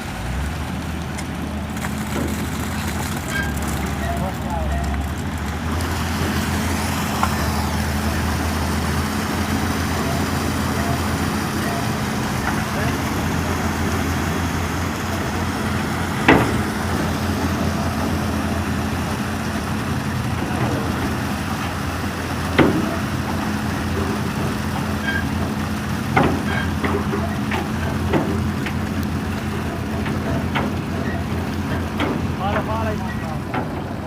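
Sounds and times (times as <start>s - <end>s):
metallic knocks and clanks: 16.2s - 17.1s, 26.1s - 28.8s, 29.4s - 34.0s.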